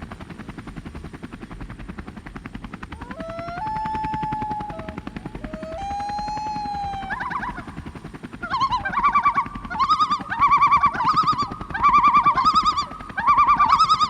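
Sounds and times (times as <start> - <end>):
rapid fluttering pulse: 0.0 - 14.0
bird singing: 3.0 - 14.0.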